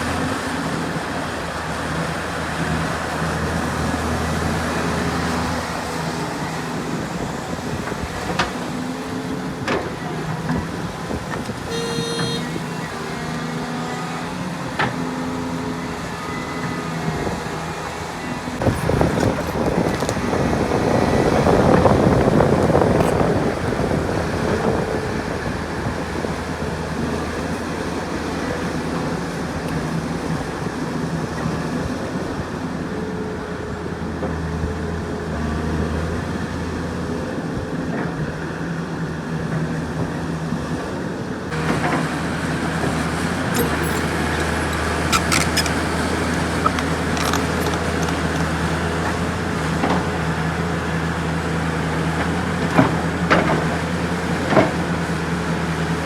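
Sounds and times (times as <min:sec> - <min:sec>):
heavy diesel engines running: 0:00.0 - 0:38.3, 0:39.1 - 0:56.0
short beep: 0:11.7 - 0:12.9.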